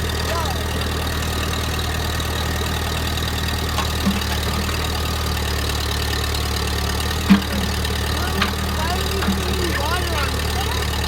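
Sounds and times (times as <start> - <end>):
engine running steadily: 0.0 - 11.0
small knock: 3.8 - 4.9, 7.3 - 9.8.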